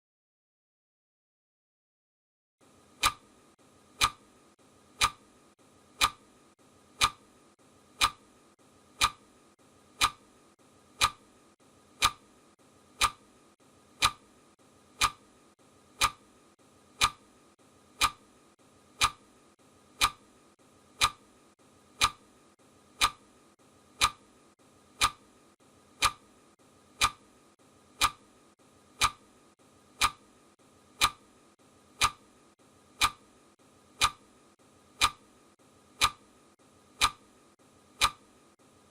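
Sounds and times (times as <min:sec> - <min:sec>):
clock ticking: 0:02.9 - 0:04.3, 0:04.9 - 0:05.3, 0:05.9 - 0:11.3, 0:11.9 - 0:18.3, 0:18.9 - 0:19.3, 0:19.9 - 0:22.3, 0:22.9 - 0:25.4, 0:26.0 - 0:31.4, 0:32.0 - 0:37.3, 0:37.9 - 0:38.4.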